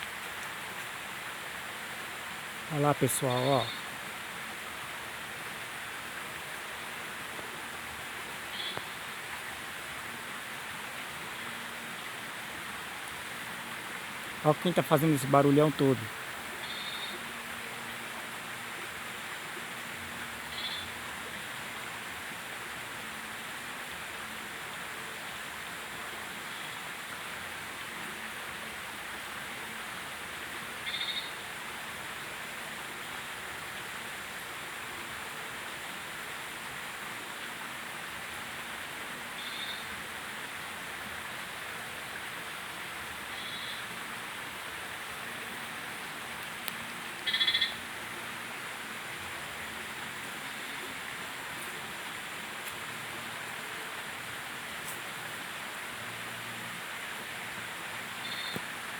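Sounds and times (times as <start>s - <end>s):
high bird calls: 16.6s - 17.2s, 30.8s - 31.4s, 39.4s - 39.9s, 47.2s - 47.8s, 58.2s - 58.6s
outdoor animal chorus: 16.6s - 17.2s, 30.8s - 31.4s, 47.2s - 47.8s.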